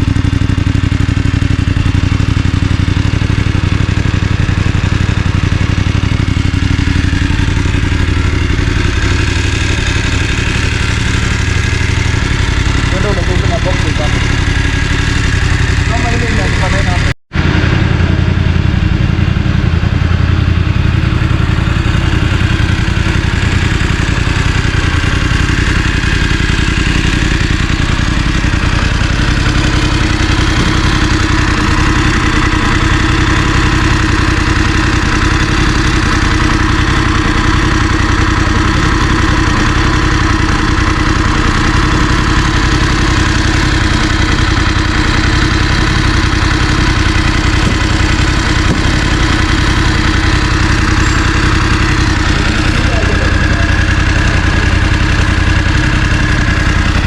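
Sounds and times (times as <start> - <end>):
motorcycle engine idling: 0.0 - 57.0.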